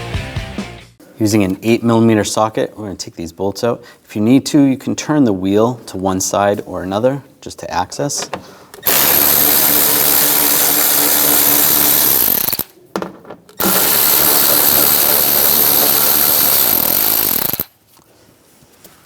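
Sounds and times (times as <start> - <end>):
power tool spinning bolts out: 8.2 - 17.7.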